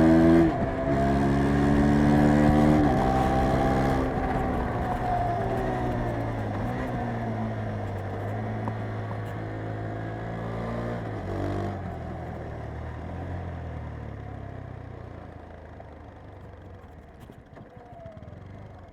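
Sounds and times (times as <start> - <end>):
motorcycle engine winding down: 17.0 - 18.9.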